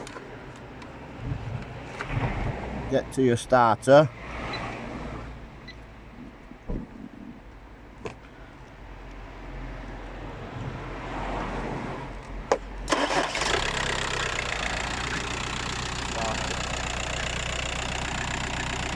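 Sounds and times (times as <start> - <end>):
car engine idling: 12.8 - 18.9
starter motor cranking engine: 12.9 - 18.9.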